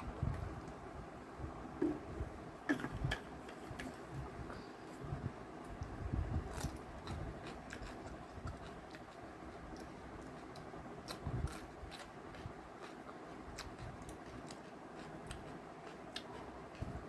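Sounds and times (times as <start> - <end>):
soft low thumps: 0.0 - 3.2
person chewing food: 5.7 - 17.0.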